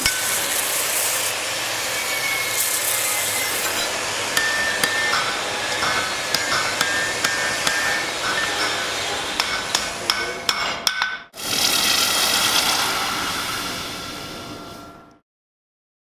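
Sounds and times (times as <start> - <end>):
hammer striking steel on anvil: 0.0 - 0.7, 3.1 - 11.4
steady hiss: 11.4 - 14.8.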